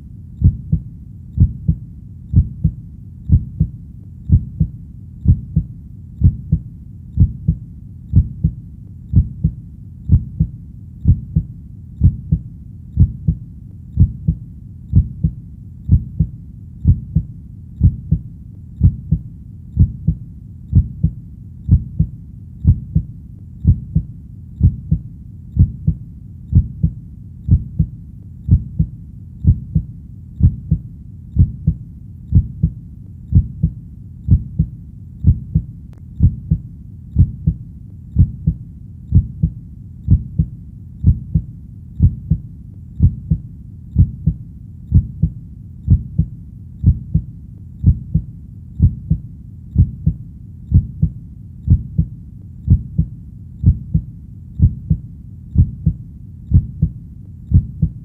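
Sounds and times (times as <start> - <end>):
heartbeat thumps: 0.4 - 58.0.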